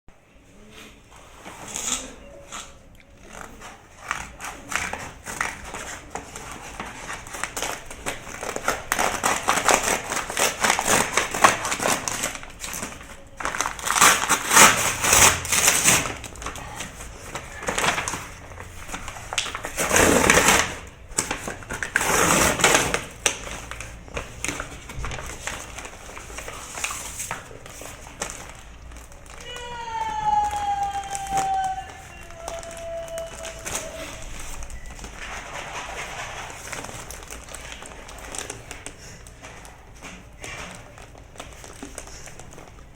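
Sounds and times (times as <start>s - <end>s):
cardboard rasping: 3.5s - 28.4s
cardboard box rustling: 4.5s - 28.6s.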